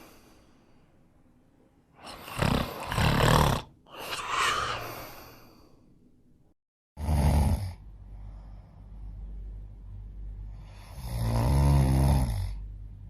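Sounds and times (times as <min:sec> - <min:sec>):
breathy out-breath: 0:00.0 - 0:01.0, 0:03.9 - 0:05.9
person snoring loudly: 0:02.0 - 0:05.4, 0:07.0 - 0:07.8, 0:10.5 - 0:12.6.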